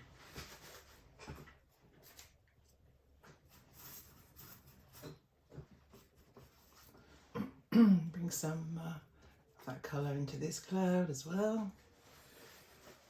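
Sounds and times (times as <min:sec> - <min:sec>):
paintbrush scratching on canvas: 0:03.5 - 0:05.1.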